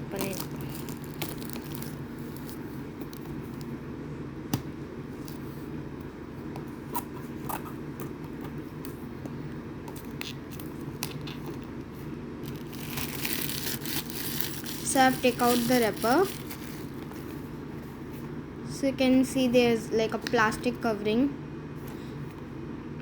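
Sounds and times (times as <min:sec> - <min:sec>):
steady low hum: 0:00.0 - 0:23.0
plastic wrapper crackling: 0:00.1 - 0:03.2, 0:12.4 - 0:17.0.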